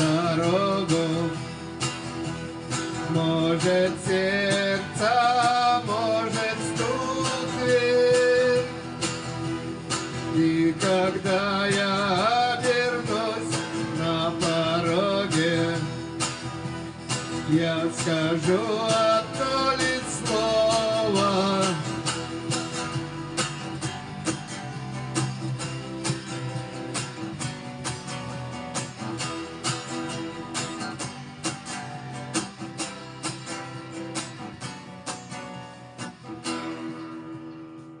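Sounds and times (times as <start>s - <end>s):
person singing: 0.0s - 1.7s, 2.9s - 9.2s, 10.0s - 16.2s, 17.3s - 22.4s
strummed acoustic guitar: 0.0s - 38.0s.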